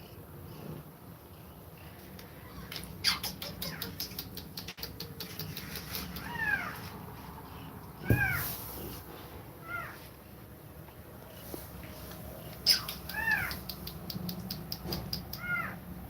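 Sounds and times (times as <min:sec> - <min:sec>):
kittens mewing: 0:02.2 - 0:10.1, 0:12.5 - 0:15.9.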